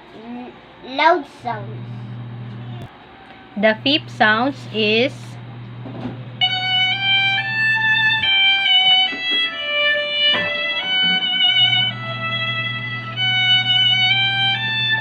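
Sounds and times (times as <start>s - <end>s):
steady low hum: 0.4s - 8.7s, 11.4s - 15.0s
violin playing a melody: 6.4s - 15.0s.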